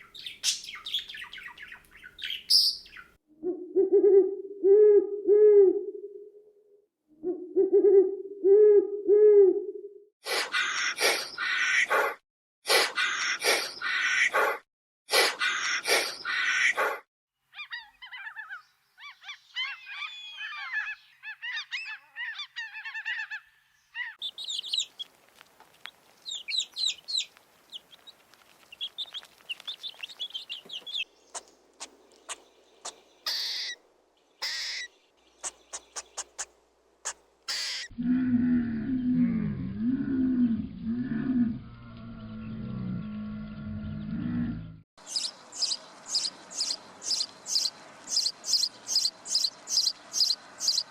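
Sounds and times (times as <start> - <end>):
birds chirping and twittering: 0.0 - 3.2, 17.5 - 37.9, 41.6 - 50.9
sharp animal calls: 30.3 - 33.8, 34.4 - 38.0
harsh animal calls: 34.4 - 44.6
low drawn-out animal call: 37.5 - 44.8.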